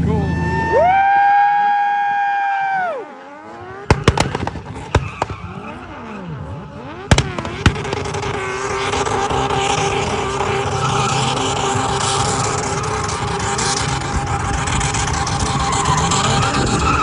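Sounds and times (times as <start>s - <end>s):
car engine revving: 2.1s - 17.0s
exhaust pops and backfires: 3.4s - 17.0s.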